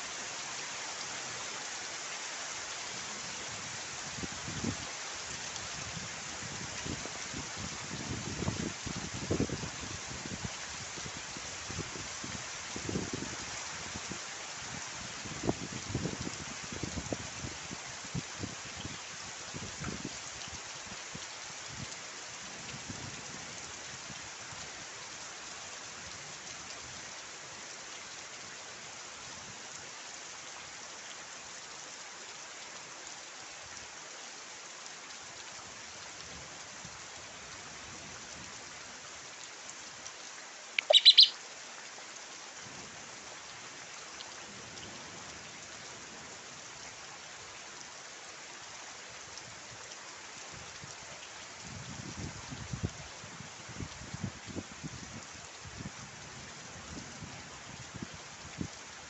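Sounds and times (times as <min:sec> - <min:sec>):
steady rain falling: 0:00.0 - 0:59.0
bird call: 0:40.8 - 0:41.4.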